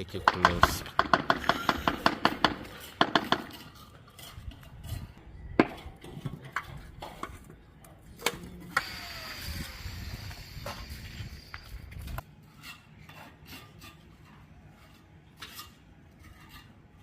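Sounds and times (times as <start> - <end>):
sharp hard knocks and clicks: 0.3 - 3.5.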